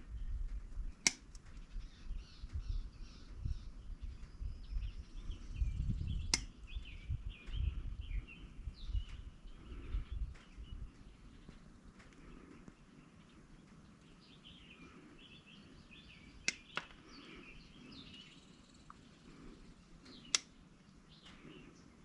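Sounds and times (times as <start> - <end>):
small birds chirping: 0.0 - 22.0
sharp click: 1.0 - 1.6, 6.3 - 6.6, 16.4 - 17.0, 20.1 - 20.6.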